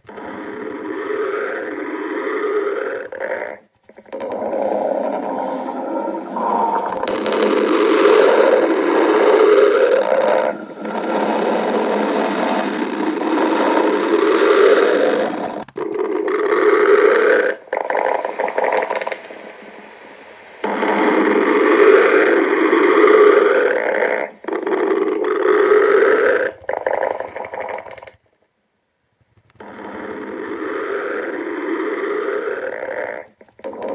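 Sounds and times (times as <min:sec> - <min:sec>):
stomach growling: 0:00.0 - 0:28.5, 0:29.2 - 0:33.9.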